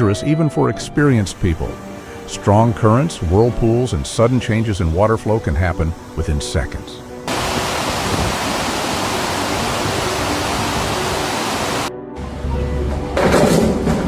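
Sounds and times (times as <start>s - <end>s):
water rushing through a dam: 7.3s - 11.9s.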